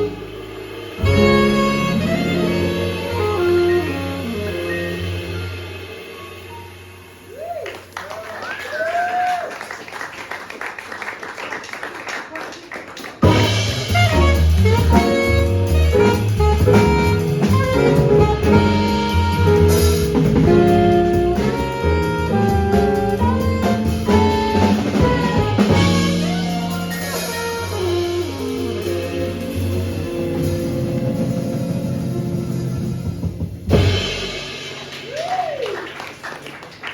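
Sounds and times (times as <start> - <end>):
saxophone: 0.0 - 5.8, 13.2 - 33.3
double bass: 0.0 - 7.3, 13.2 - 34.8
drum kit: 0.0 - 9.5, 13.0 - 36.0
piano: 0.0 - 10.2, 13.0 - 36.9.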